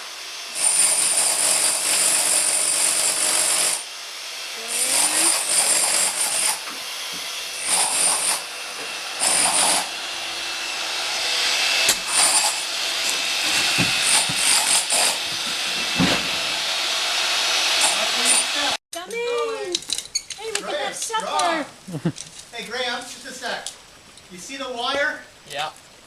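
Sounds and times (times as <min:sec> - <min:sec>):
power tool against a wall: 0:00.0 - 0:18.8
sharp knocks: 0:13.4 - 0:16.5.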